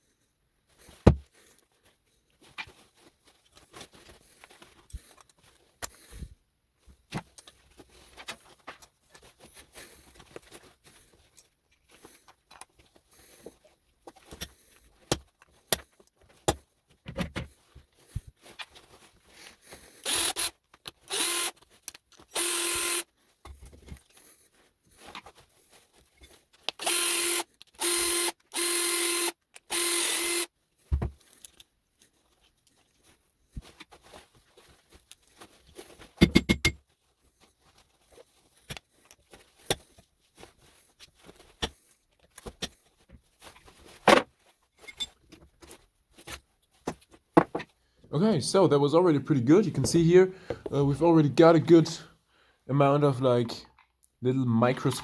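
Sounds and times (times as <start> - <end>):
small electric power tool: 20.0 - 21.6, 22.3 - 23.1, 26.8 - 30.5.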